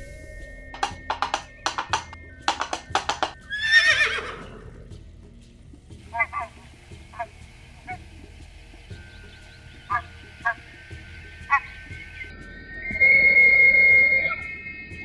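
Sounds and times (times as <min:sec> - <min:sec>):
horse whinnying: 0:03.4 - 0:04.9
faint short calls: 0:09.2 - 0:12.3.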